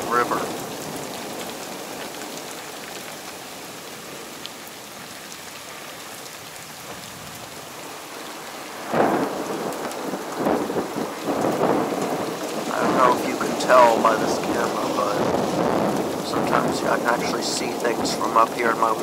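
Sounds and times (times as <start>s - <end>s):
thunder clap rumbling: 0.0s - 2.4s, 8.5s - 19.0s
heavy rain falling: 0.0s - 19.0s.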